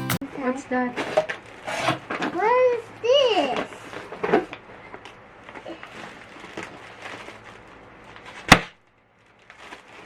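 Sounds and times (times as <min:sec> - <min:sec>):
packaging rustling: 0:03.8 - 0:10.0.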